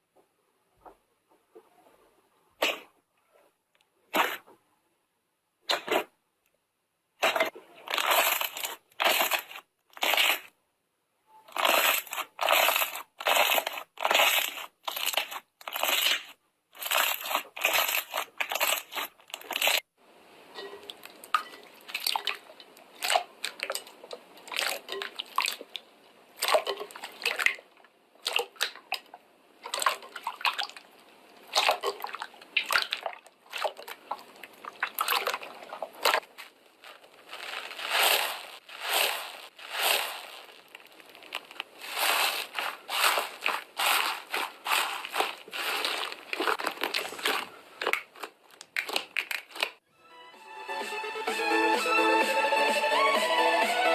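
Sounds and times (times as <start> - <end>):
crunchy slime squishing: 7.2 - 10.6, 11.5 - 19.9, 20.9 - 25.8, 28.2 - 49.8.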